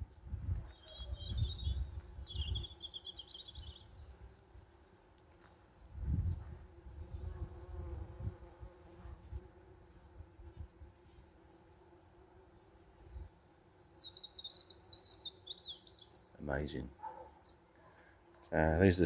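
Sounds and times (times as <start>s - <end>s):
bees buzzing: 1.2s - 16.3s.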